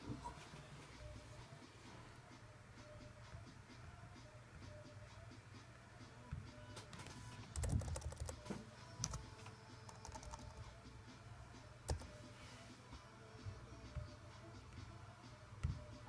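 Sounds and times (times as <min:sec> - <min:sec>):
keyboard typing: 0:07.4 - 0:10.7, 0:11.9 - 0:12.2.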